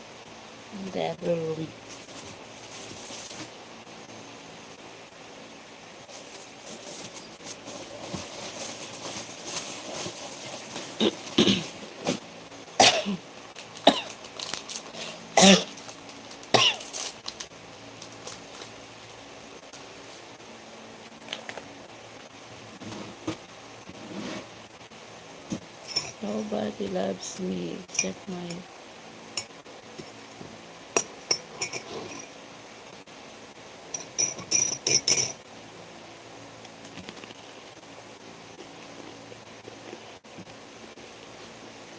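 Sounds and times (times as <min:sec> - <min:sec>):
person coughing dryly: 0:11.0 - 0:11.8, 0:12.8 - 0:13.2, 0:13.8 - 0:14.2, 0:15.4 - 0:15.7, 0:16.5 - 0:16.9
dishware clinking: 0:34.0 - 0:35.4.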